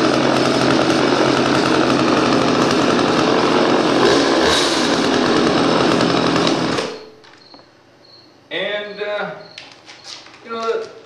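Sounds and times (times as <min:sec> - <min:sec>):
chainsaw running: 0:00.0 - 0:07.3.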